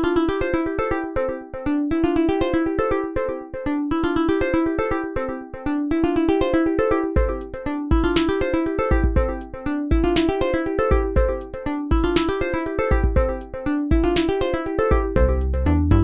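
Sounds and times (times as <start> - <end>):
deep bass: 14.9 - 16.0.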